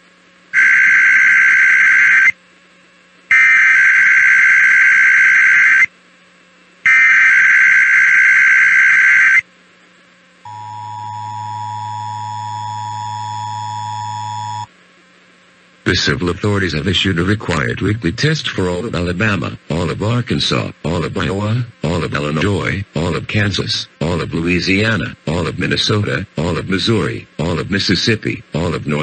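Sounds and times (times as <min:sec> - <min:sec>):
two-tone attention signal: 0:10.5 - 0:14.7.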